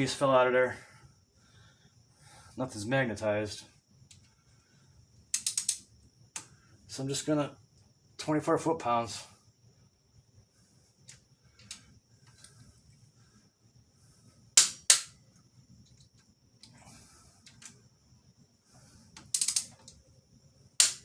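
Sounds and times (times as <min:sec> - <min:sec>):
torque wrench clicking: 0:05.3 - 0:05.8, 0:19.2 - 0:20.0, 0:20.8 - 0:21.0.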